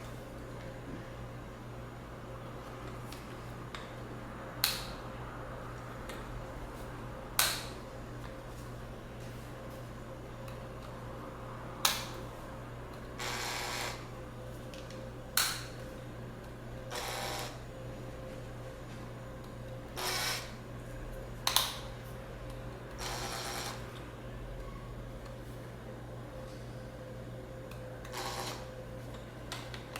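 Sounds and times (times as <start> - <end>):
drill motor running: 13.2 - 14.0, 16.9 - 17.6, 20.0 - 20.6, 23.0 - 23.8, 28.1 - 28.6.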